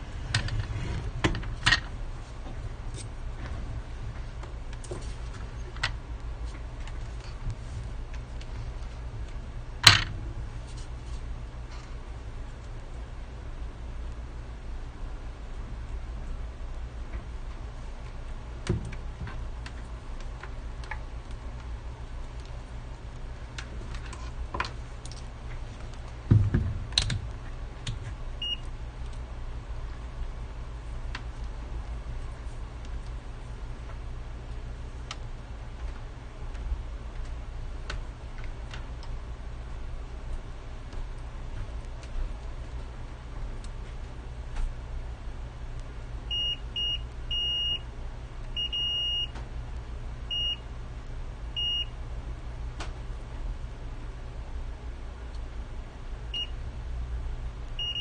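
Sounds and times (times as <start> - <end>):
steady low hum: 0.0 - 58.0
multimeter continuity beeps: 28.4 - 28.7, 46.3 - 47.8, 48.6 - 49.4, 50.3 - 50.6, 51.6 - 51.9, 56.3 - 56.6, 57.8 - 58.0.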